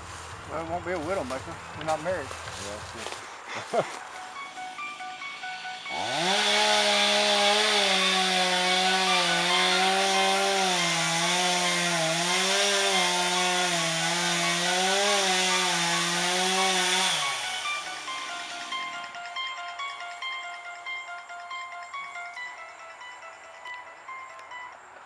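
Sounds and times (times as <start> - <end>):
chainsaw cutting wood: 4.5 - 21.2.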